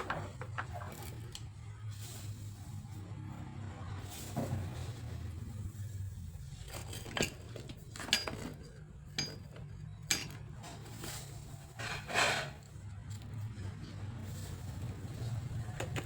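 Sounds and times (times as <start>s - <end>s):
scraping clatter: 0.0s - 2.5s, 4.0s - 16.0s
metal tools clinking: 6.7s - 10.4s.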